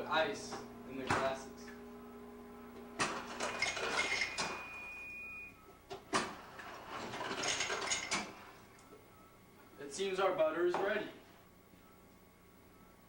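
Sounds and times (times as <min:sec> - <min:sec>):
high steady tone: 0:00.0 - 0:05.8.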